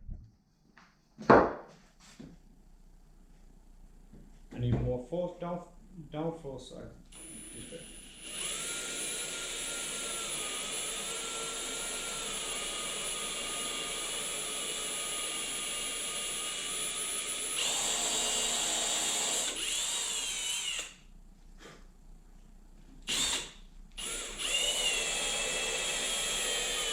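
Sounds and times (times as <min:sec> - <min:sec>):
electric drill boring into wood: 0:07.1 - 0:21.0, 0:23.1 - 0:26.9.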